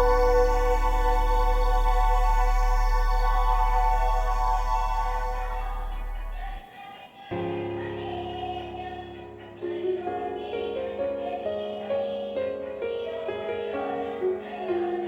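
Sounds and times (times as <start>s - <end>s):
background music: 0.0s - 6.6s.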